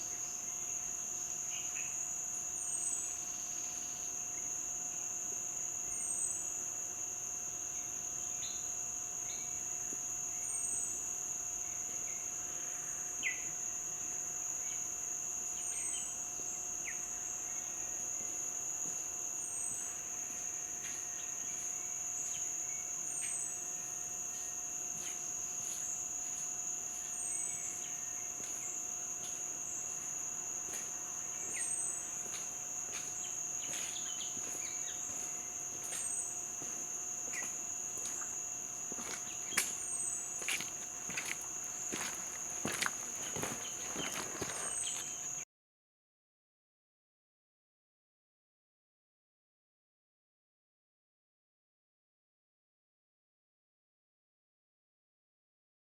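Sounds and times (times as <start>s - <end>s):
high-pitched insect chorus: 0.0s - 45.4s
stream water hiss: 38.0s - 45.3s.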